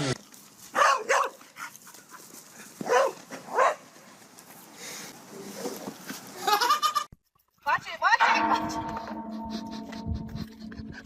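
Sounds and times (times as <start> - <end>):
dog barking: 0.8 - 1.4, 2.8 - 3.8.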